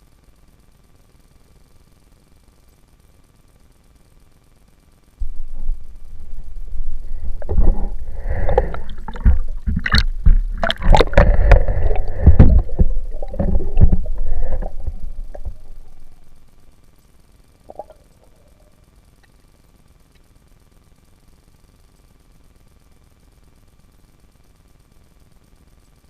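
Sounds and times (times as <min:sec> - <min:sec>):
underwater water sloshing: 0:05.2 - 0:16.6
low rumble: 0:05.2 - 0:16.8.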